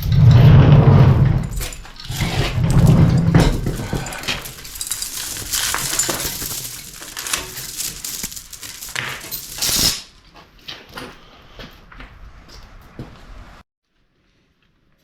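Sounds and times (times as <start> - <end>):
metal tools clinking and rattling: 1.2 - 10.2.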